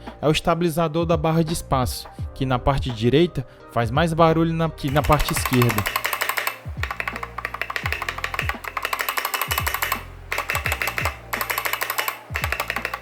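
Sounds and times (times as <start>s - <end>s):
electronic beat music: 4.9s - 13.0s.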